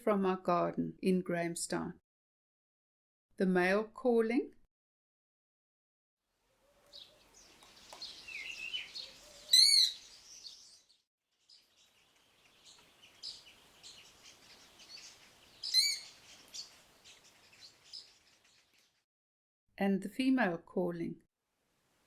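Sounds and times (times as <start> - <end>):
faint bird chirps: 6.5 - 19.0
woodpecker shriek call: 6.8 - 10.7, 12.7 - 18.6.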